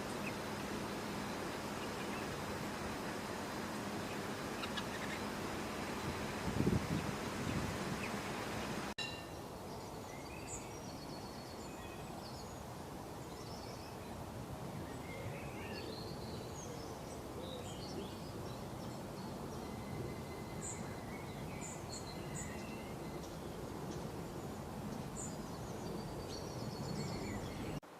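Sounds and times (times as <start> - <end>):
birds chirping and calling: 0.0 - 9.2
outdoor background hiss: 0.0 - 27.9.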